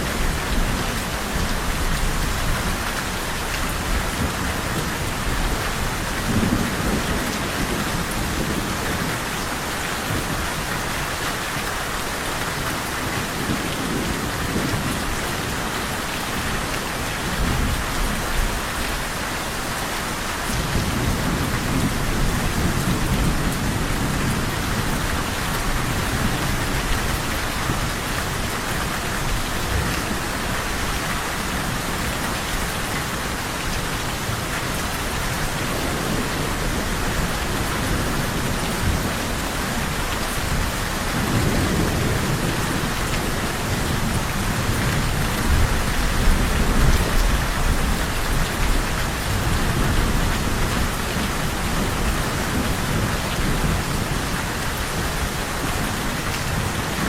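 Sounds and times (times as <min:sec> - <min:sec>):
heavy rain falling: 0:00.0 - 0:57.0
rolling thunder: 0:35.4 - 0:54.7.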